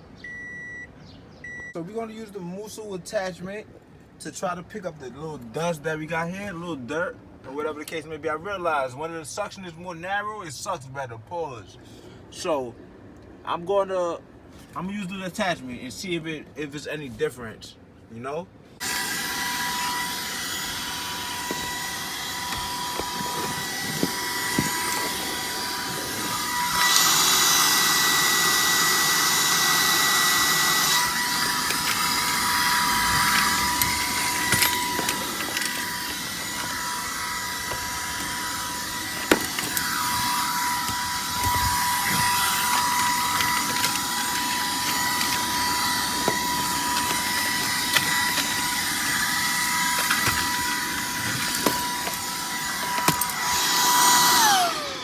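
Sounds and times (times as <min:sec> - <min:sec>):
stick vacuum running: 0:18.8 - 0:55.0.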